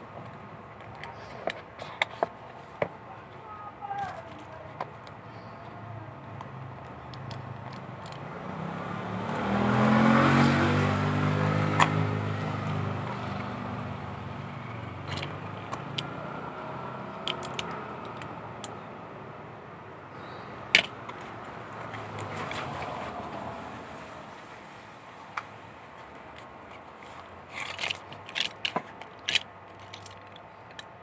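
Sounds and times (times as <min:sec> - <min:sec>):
motor vehicle passing: 0:05.4 - 0:28.0
sharp clicks: 0:17.1 - 0:18.8.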